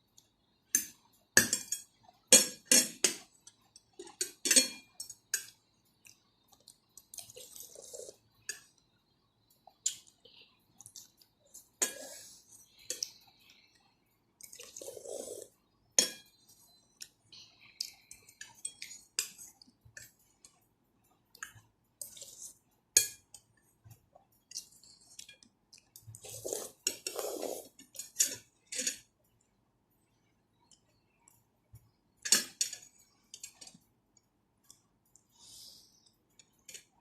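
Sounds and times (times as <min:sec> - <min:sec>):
close-up eating noise: 0:00.2 - 0:29.2
cutlery clinking on a bowl: 0:00.7 - 0:05.6, 0:11.8 - 0:13.2, 0:16.0 - 0:17.2, 0:18.2 - 0:20.6, 0:21.4 - 0:23.5, 0:24.5 - 0:29.1, 0:32.2 - 0:33.8.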